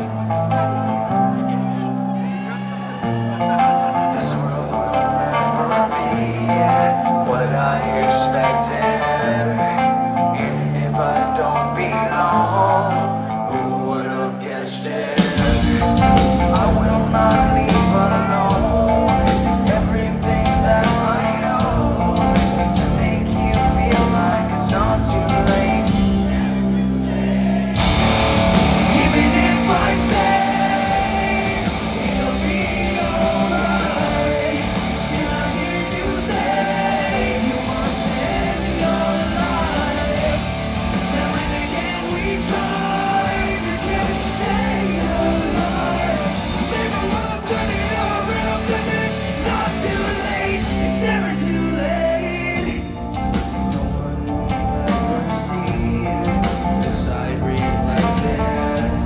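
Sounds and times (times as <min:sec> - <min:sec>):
electric guitars: 0:00.0 - 0:59.0
person singing: 0:00.0 - 0:59.0
drums: 0:13.6 - 0:59.0.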